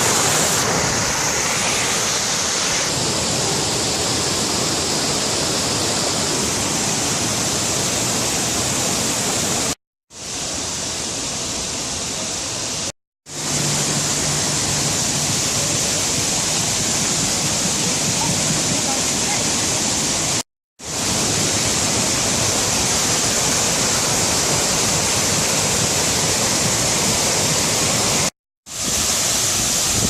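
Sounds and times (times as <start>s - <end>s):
waterfall roaring: 0.0s - 30.0s.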